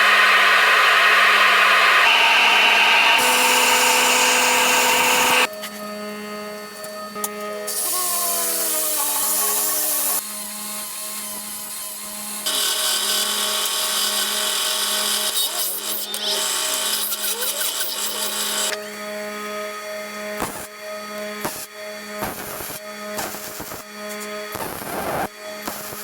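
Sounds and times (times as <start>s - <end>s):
power tool running: 0.0s - 5.5s, 7.7s - 19.0s
steady hum: 0.0s - 5.5s.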